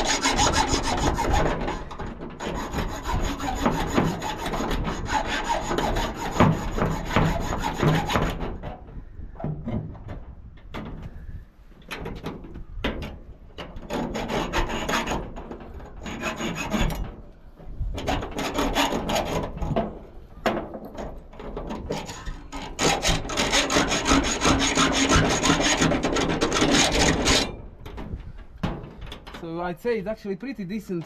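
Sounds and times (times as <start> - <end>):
hacksaw cutting through steel: 0.0 - 8.6, 13.8 - 17.1, 18.0 - 19.8, 21.7 - 27.6.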